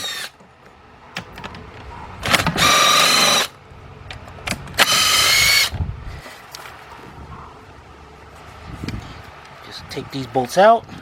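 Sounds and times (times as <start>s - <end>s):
bolts and socket rattling: 0.1s - 4.9s
impact driver motor whine: 2.3s - 3.5s, 4.8s - 5.8s.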